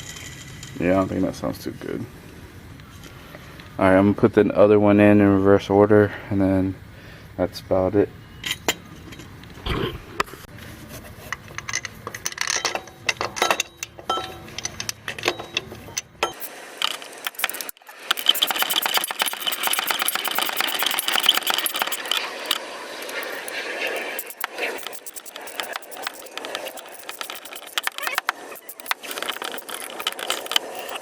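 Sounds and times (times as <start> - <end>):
hand tools clinking on metal: 11.6 - 31.0
ratchet wrench clicking: 17.2 - 31.0.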